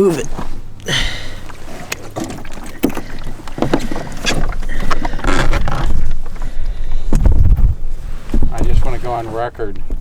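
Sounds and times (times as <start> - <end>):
water noise: 0.0 - 10.0
boat knocks: 1.4 - 10.0
wind buffeting microphone: 2.8 - 10.0.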